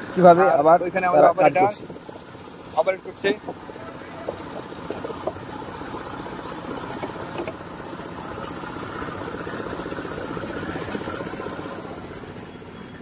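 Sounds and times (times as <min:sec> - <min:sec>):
diesel engine chugging: 0:00.0 - 0:13.0.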